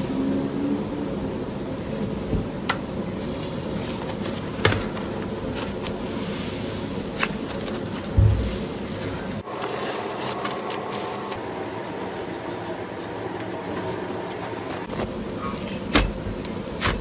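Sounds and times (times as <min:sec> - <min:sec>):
low buzzing hum: 0:00.0 - 0:17.0
soft thump: 0:08.2 - 0:08.6.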